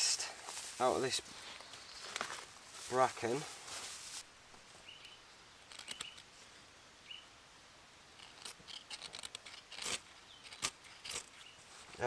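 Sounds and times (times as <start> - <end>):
faint bird chirps: 4.8 - 7.4.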